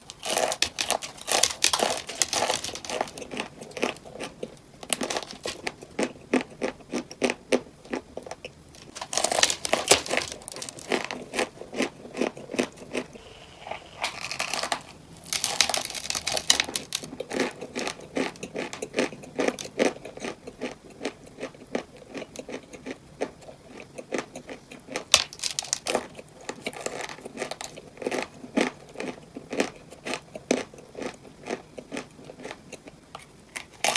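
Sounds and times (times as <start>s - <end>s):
crunching cupcakes: 0.0s - 33.9s
paper wrappers rustling: 0.1s - 3.2s, 8.8s - 11.2s, 13.7s - 17.5s.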